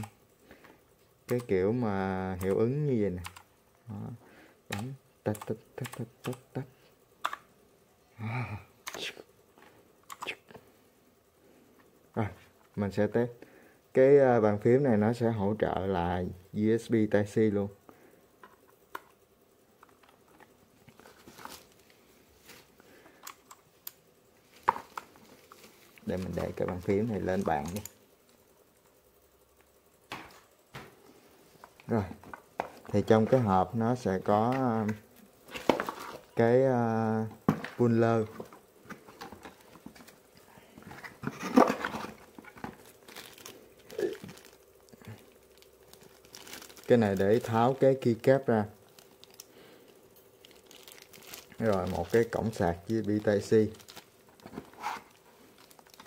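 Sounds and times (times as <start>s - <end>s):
keyboard clicks and rustles: 24.6s - 28.0s
packaging crinkling: 41.0s - 56.0s.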